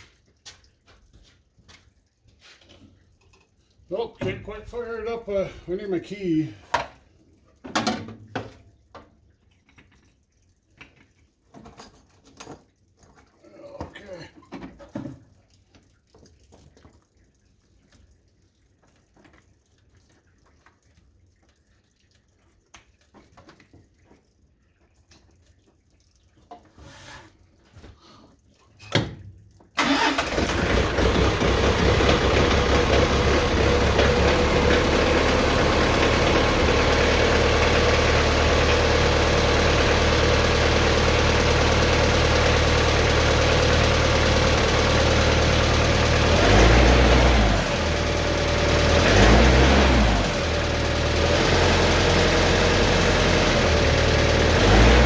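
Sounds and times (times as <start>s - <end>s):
diesel tractor engine idling: 29.8s - 55.0s.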